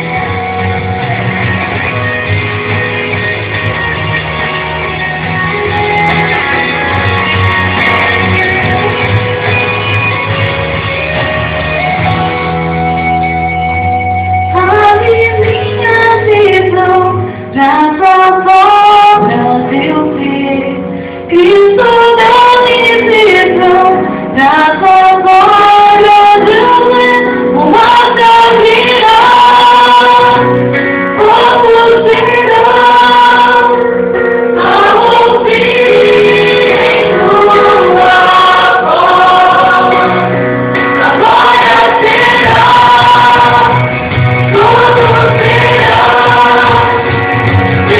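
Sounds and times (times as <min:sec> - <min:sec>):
band playing: 0:00.0 - 0:17.7, 0:26.1 - 0:47.9
woman singing gospel: 0:14.6 - 0:34.0, 0:34.6 - 0:40.4, 0:41.0 - 0:47.2.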